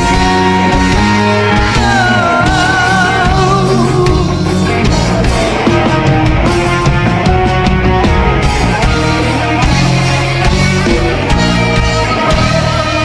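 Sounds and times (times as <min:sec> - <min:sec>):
drums steady beat: 0:00.0 - 0:13.0
rock band playing: 0:00.0 - 0:13.0.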